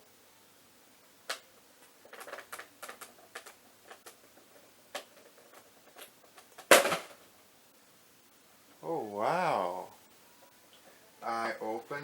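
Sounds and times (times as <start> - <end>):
container lid clicking and crackling: 1.3 - 4.3.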